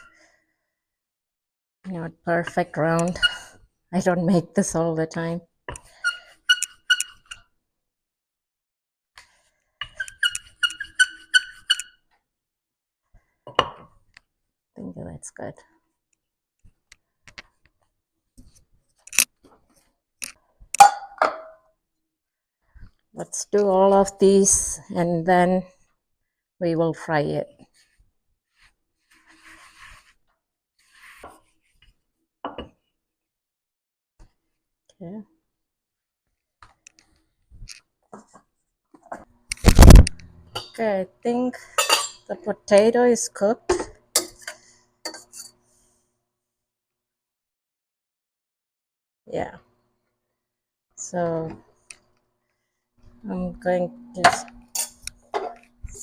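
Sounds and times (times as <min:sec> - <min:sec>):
rolling pin squeaking: 0:05.8 - 0:07.4, 0:09.8 - 0:12.1
rolling pin rubbing on dough: 0:27.8 - 0:30.2.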